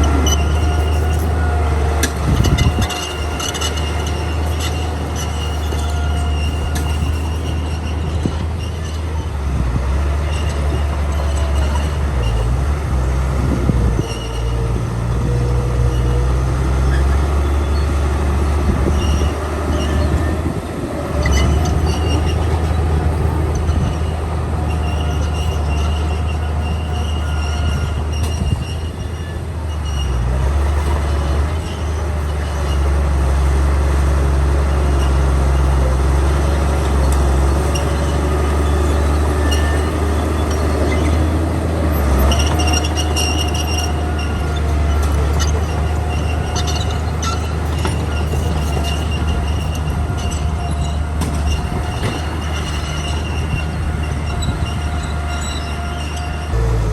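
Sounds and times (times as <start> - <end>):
bulldozer diesel engine rumbling: 0.0 - 56.9
metallic track squeals: 0.0 - 56.9.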